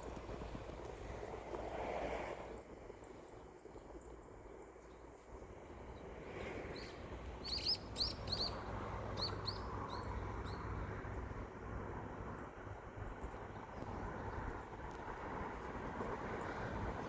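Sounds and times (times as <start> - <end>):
small bird chirping: 6.7 - 10.7.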